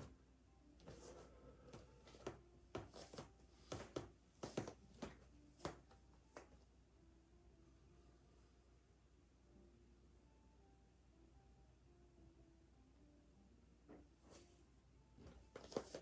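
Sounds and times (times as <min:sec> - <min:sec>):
small taps and rustles: 0:15.2 - 0:16.0.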